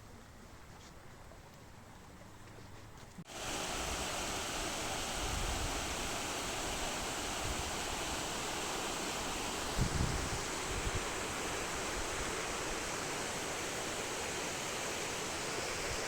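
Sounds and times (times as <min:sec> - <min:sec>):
rushing water: 0:03.3 - 0:16.0.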